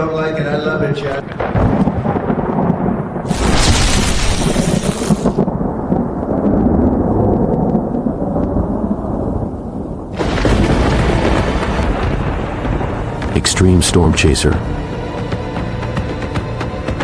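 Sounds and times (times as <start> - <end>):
thunder rumbling: 0.8 - 14.0.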